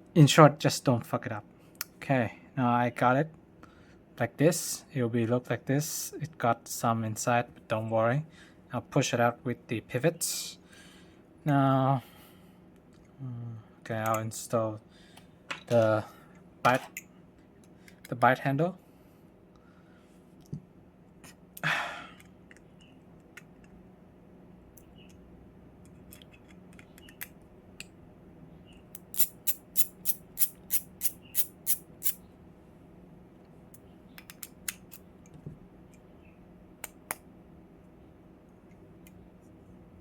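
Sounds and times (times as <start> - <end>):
knife parts clicking: 29.0 - 32.2.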